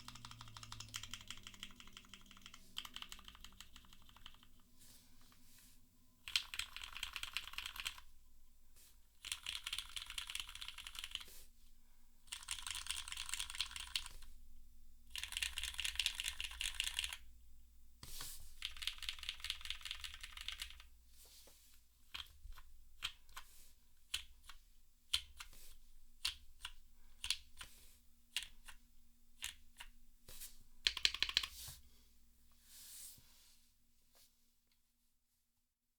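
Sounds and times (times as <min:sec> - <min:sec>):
typing on mechanical keyboard: 0:00.0 - 0:04.6, 0:06.2 - 0:08.1, 0:09.2 - 0:11.3, 0:12.3 - 0:14.3, 0:15.1 - 0:17.2, 0:18.6 - 0:20.9, 0:28.3 - 0:28.8, 0:29.4 - 0:29.9, 0:30.8 - 0:31.5.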